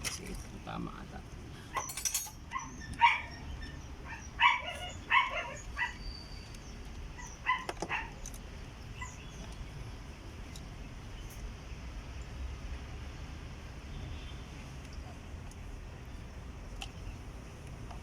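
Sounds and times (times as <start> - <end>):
dog barking: 2.5 - 3.4, 4.1 - 6.0, 7.2 - 8.2.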